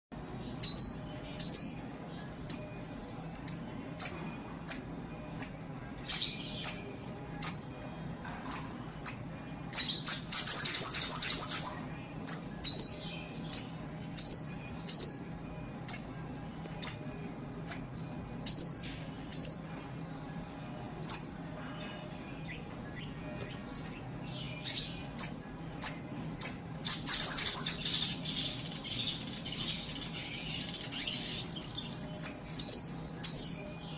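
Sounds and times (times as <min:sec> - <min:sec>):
songbird calling: 0:22.4 - 0:33.9
rapid bird chattering: 0:24.8 - 0:32.9.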